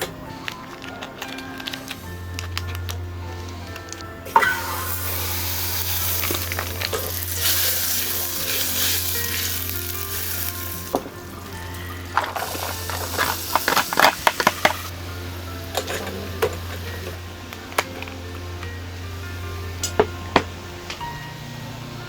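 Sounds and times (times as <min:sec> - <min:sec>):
food sizzling in hot pan: 0:04.3 - 0:17.2.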